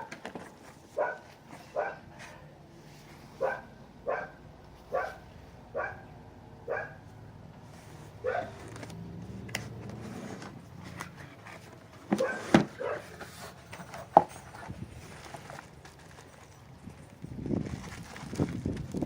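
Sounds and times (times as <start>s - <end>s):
dog barking: 1.0s - 2.1s, 3.4s - 6.1s, 6.7s - 7.0s, 8.2s - 8.6s, 12.2s - 13.1s
handling clicks and knocks: 8.3s - 17.1s.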